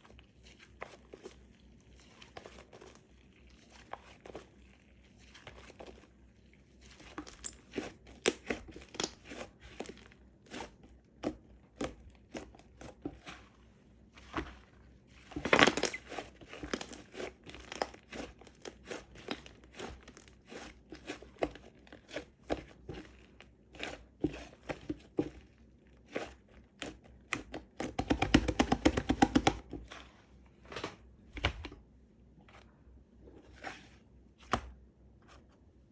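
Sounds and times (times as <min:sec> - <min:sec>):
slime squishing and crackling: 0:06.8 - 0:13.4, 0:14.2 - 0:25.1.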